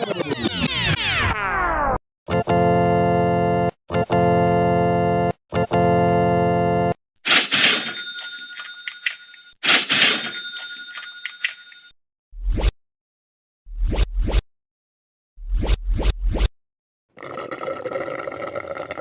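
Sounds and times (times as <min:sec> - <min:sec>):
held organ-like chords: 0:02.3 - 0:07.0.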